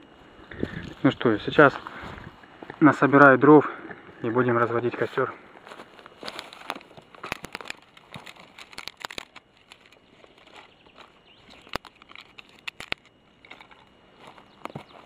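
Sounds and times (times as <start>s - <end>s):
dry twigs snapping: 6.1s - 14.8s.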